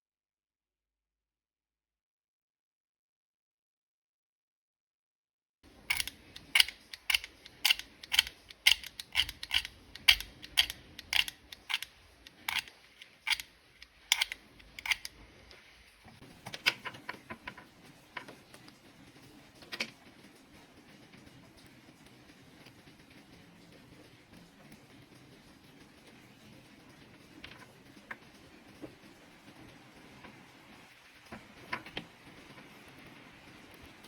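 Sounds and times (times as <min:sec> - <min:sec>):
sharp mechanical clicks: 0:05.8 - 0:15.6.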